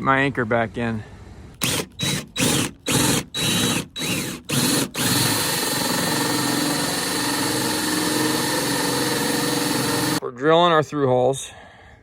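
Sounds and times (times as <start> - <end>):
power drill whining: 1.6 - 10.2.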